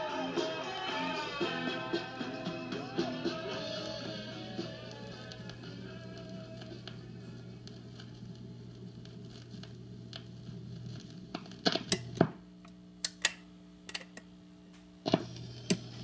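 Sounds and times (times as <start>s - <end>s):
record player humming: 0.0s - 16.0s.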